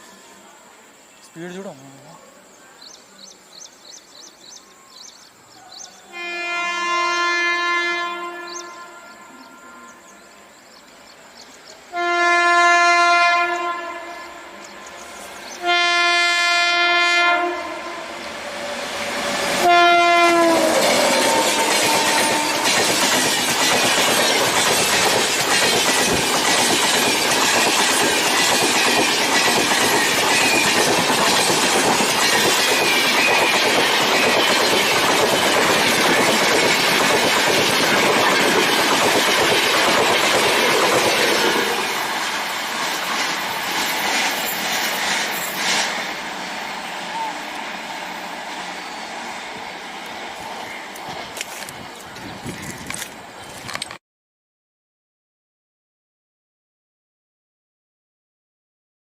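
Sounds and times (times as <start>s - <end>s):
train horn blasts: 6.1s - 10.5s, 11.9s - 14.7s, 15.6s - 18.4s, 19.2s - 22.8s, 41.2s - 42.1s
train clattering over rail joints: 20.4s - 46.7s.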